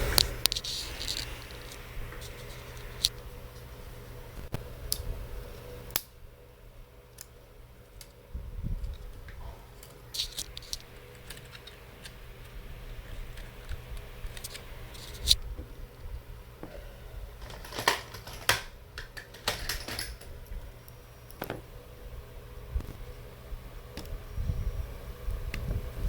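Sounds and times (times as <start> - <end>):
small tools clicking and scraping: 9.8 - 15.4, 17.4 - 20.3.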